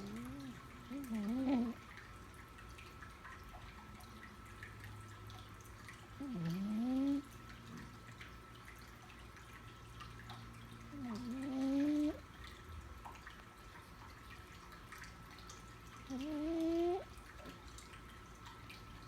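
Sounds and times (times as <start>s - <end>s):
cat snoring: 0.0s - 1.8s, 6.2s - 7.3s, 10.9s - 12.2s, 16.1s - 17.1s.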